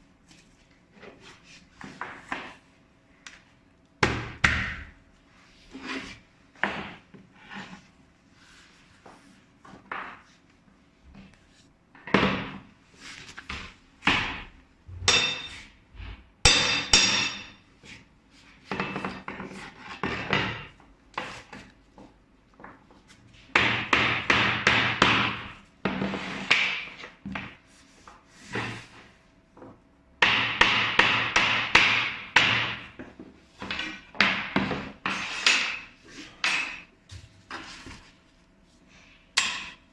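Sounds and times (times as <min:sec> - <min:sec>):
hammer striking wood: 0:16.5 - 0:17.6, 0:23.6 - 0:25.5, 0:30.2 - 0:32.9.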